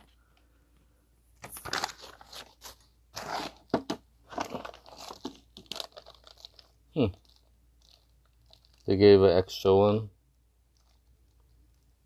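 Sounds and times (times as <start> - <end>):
plastic packaging crinkling: 1.4 - 9.0, 10.7 - 11.8.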